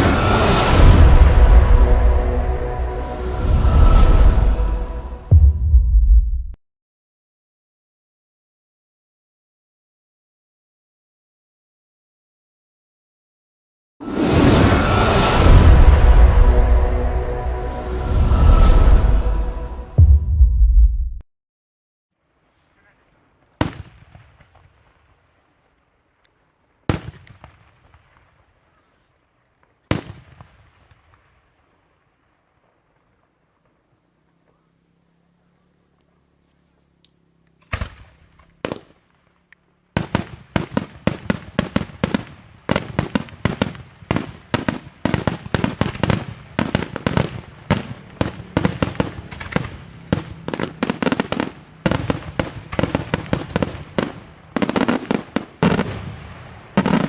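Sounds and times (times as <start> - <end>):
rapid barrage of fireworks: 0.0 - 4.4, 14.0 - 19.0, 26.9 - 29.1, 29.7 - 31.4, 37.6 - 57.0
fireworks bangs with echo: 0.0 - 5.9, 14.0 - 20.2, 23.6 - 25.2, 26.9 - 29.1, 29.8 - 31.4, 37.6 - 57.0.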